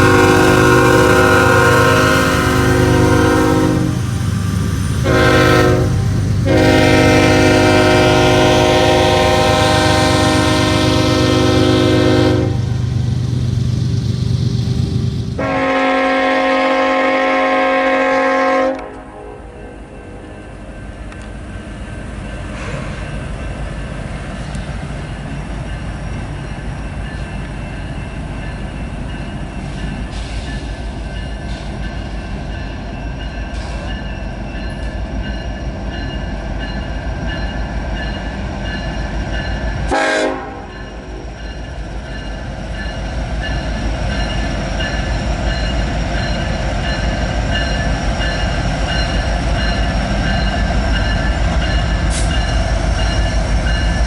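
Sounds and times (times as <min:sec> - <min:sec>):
train horn blast: 0:00.0 - 0:04.3, 0:04.9 - 0:13.2, 0:15.4 - 0:20.4, 0:39.9 - 0:41.1
train rumbling past: 0:00.0 - 0:54.0.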